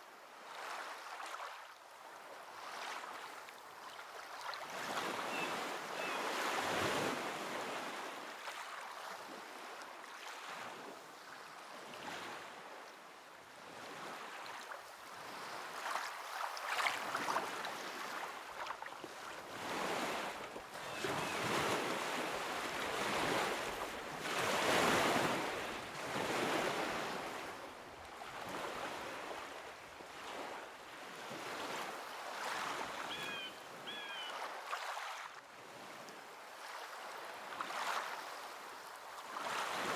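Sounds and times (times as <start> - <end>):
waves washing onto shore: 13.9 - 33.4.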